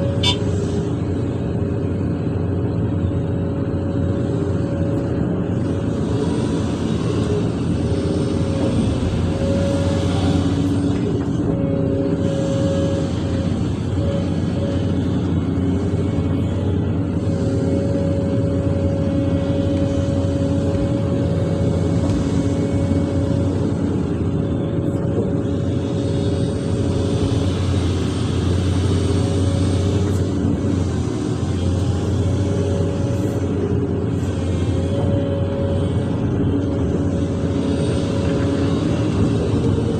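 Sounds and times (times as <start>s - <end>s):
constant whine: 0.0s - 39.9s
diesel engine running: 0.0s - 39.9s.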